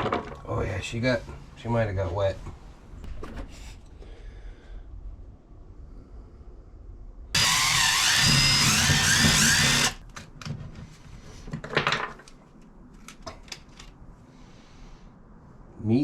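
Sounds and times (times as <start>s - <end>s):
power tool motor whining: 7.4s - 10.0s
small clicks and handling of parts: 10.0s - 14.0s.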